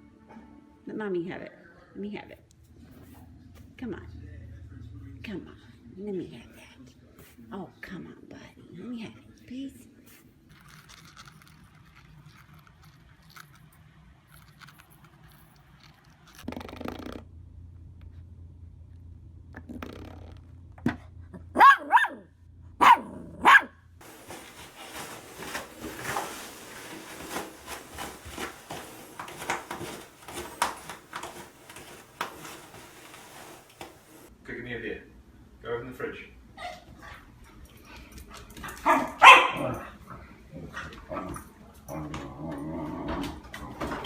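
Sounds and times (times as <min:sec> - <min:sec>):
dog barking: 0:21.4 - 0:23.8, 0:38.8 - 0:40.0.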